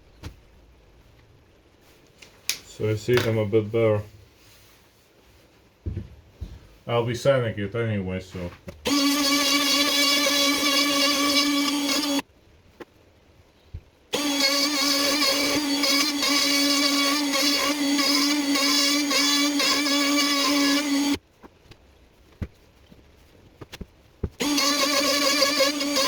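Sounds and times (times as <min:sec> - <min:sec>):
wood router high whine: 0:08.9 - 0:12.2, 0:14.1 - 0:21.2, 0:24.4 - 0:26.0.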